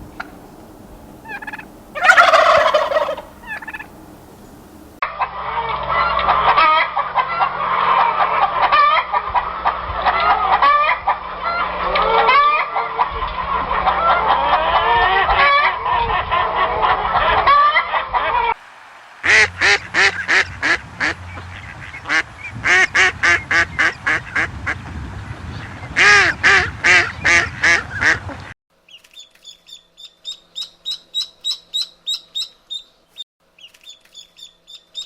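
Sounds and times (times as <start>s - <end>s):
turkey gobbling: 0.0s - 4.8s, 5.6s - 13.2s, 19.2s - 24.8s
flock of turkeys calling: 0.0s - 5.0s, 17.1s - 24.8s.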